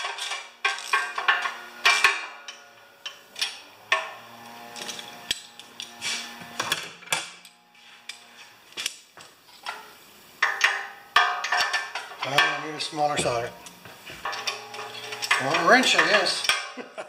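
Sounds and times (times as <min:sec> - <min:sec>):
metal hand tools clanking: 0:00.0 - 0:04.1, 0:10.4 - 0:16.9.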